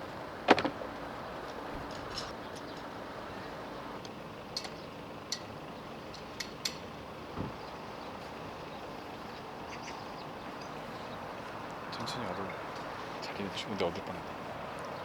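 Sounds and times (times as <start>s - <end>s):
outdoor background noise: 0.0s - 15.0s
dull thump: 0.5s - 0.9s, 7.4s - 7.6s.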